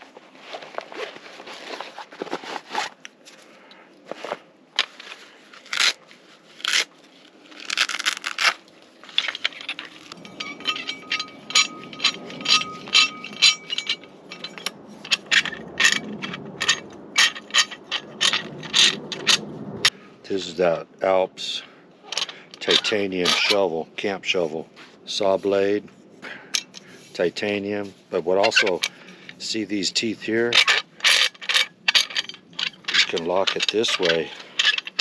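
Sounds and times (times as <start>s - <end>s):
metal scraping and clinks: 7.6s - 19.9s, 22.0s - 24.5s, 25.1s - 27.6s, 28.2s - 35.0s.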